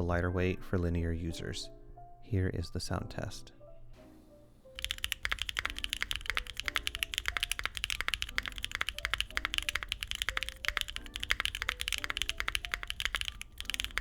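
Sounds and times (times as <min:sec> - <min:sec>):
mechanical keyboard typing: 0:04.8 - 0:14.0.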